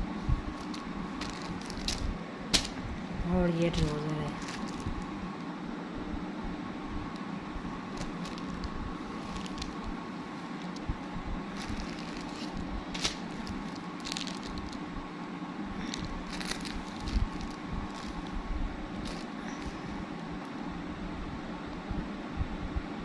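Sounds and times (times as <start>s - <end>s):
clothes rustling: 0.0s - 5.2s, 7.7s - 14.8s, 15.8s - 20.3s
steady background hum: 0.0s - 23.0s.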